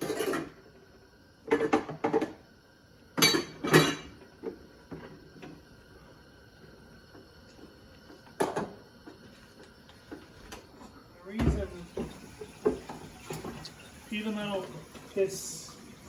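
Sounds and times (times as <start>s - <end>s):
pots and pans clattering: 0.0s - 0.6s, 1.5s - 2.4s, 3.2s - 4.2s, 11.4s - 14.0s.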